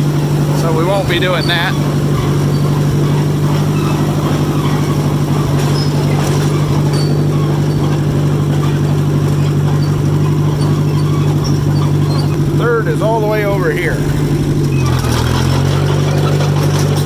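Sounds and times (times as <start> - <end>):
crawler engine running: 0.0 - 17.0.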